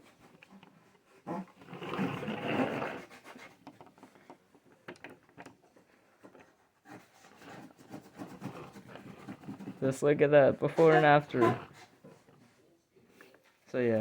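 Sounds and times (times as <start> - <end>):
rubbing scrape: 0.0 - 4.1, 6.2 - 10.0, 10.6 - 12.0.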